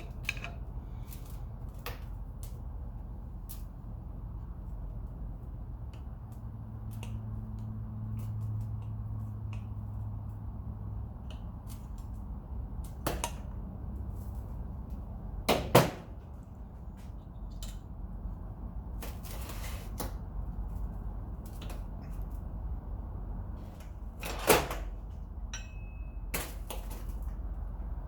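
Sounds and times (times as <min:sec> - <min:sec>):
tools and metal parts clicking: 0:00.0 - 0:01.3
low steady hum: 0:00.0 - 0:28.0.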